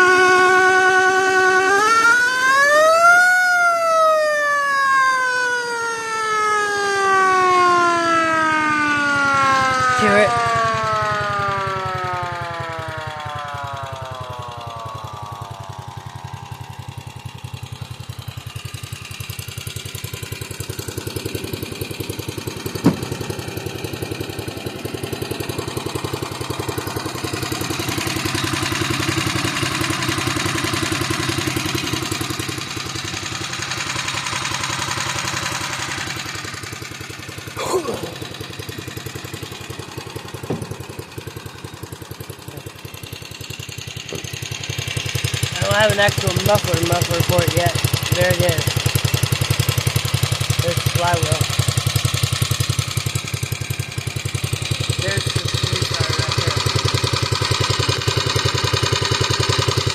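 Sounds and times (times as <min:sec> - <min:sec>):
unmuffled engine idling: 0:08.1 - 0:59.9
brief falling whine: 0:09.6 - 0:18.6.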